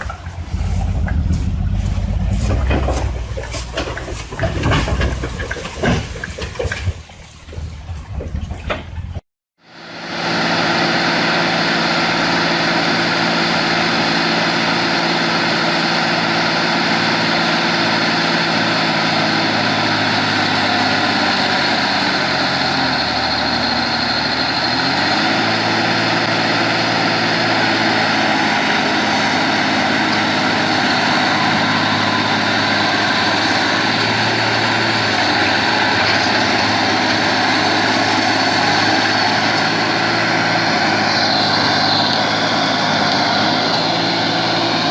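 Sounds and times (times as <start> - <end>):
diesel engine running: 0.0 - 8.4, 9.6 - 44.9.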